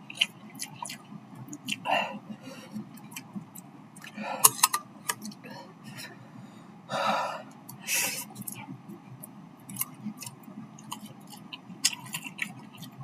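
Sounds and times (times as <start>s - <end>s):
wet chewing clicks: 0.0s - 2.1s, 7.6s - 13.0s.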